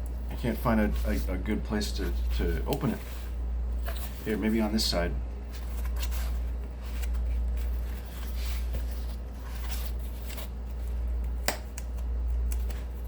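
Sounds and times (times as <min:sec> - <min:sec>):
cardboard rustling and scraping: 0:00.4 - 0:04.8, 0:05.5 - 0:11.0
sharp cardboard snap: 0:11.4 - 0:12.0.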